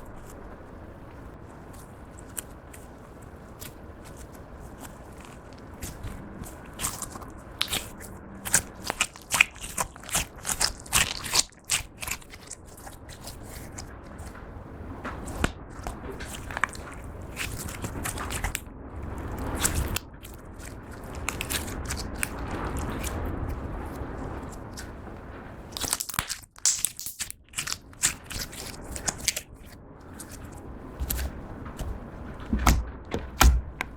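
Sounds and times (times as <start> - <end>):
slime squished by hand: 0.0 - 33.9
sticky slime clicks and pops: 25.8 - 29.4.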